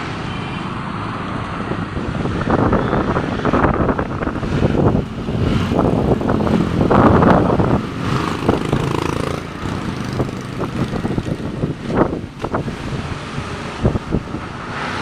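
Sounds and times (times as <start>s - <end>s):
gusting wind buffeting microphone: 0.0s - 15.0s.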